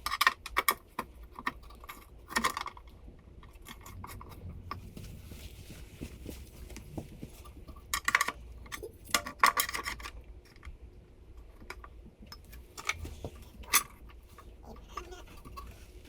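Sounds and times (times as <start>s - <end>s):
metal parts clanking and rattling: 0.0s - 5.0s, 7.4s - 10.7s, 11.6s - 16.0s.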